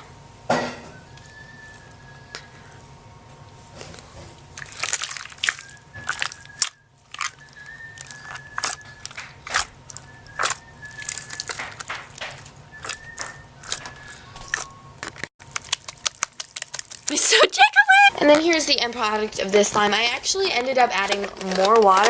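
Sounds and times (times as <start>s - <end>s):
slime squeezed by hand: 3.8s - 17.2s.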